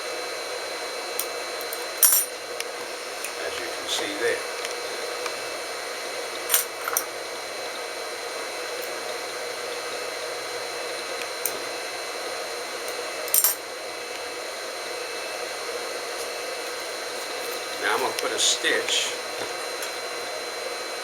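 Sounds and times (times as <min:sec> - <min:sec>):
sewing machine motor whirring: 0:16.0 - 0:20.3.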